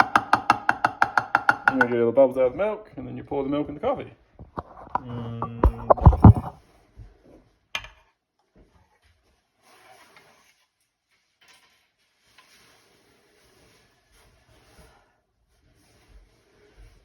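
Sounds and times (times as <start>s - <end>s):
milk jug knocking on counter: 0.0s - 2.0s.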